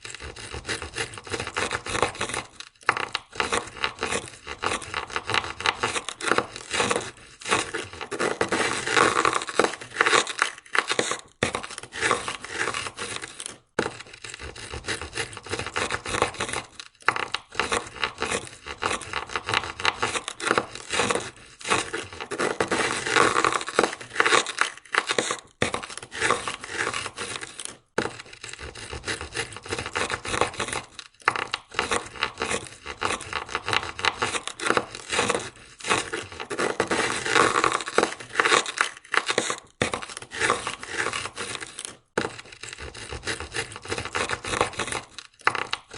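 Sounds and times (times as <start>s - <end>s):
ice scraper scraping car window: 0.0s - 45.9s.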